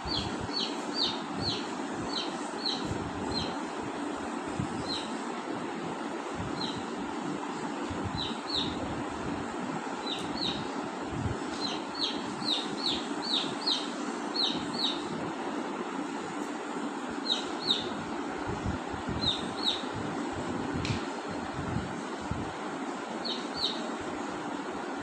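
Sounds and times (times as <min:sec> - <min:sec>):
parakeets calling: 0:00.0 - 0:03.8, 0:04.8 - 0:05.2, 0:06.5 - 0:07.0, 0:08.1 - 0:08.9, 0:10.0 - 0:10.8, 0:11.5 - 0:15.2, 0:17.0 - 0:18.2, 0:19.2 - 0:20.0, 0:23.2 - 0:24.0
steady background noise: 0:00.0 - 0:25.0.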